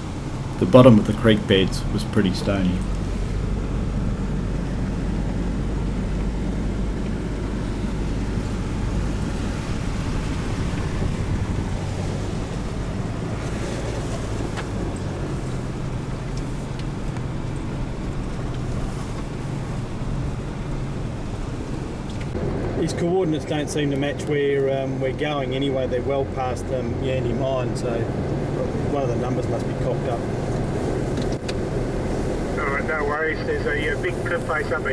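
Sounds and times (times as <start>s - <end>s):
water splashing: 0.0s - 26.6s
engine and tyre rumble: 0.0s - 34.9s
wind noise on microphone: 2.9s - 16.1s.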